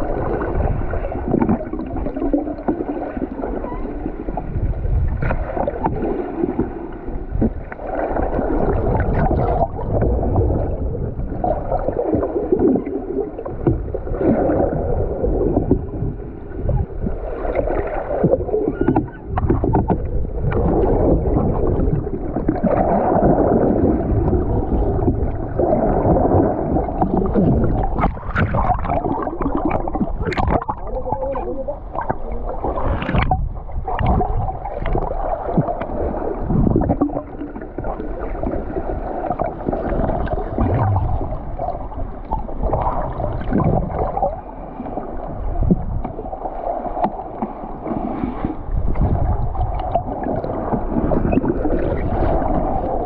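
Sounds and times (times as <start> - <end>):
water sloshing around boat: 0.0 - 53.0
low rumble: 40.0 - 44.5.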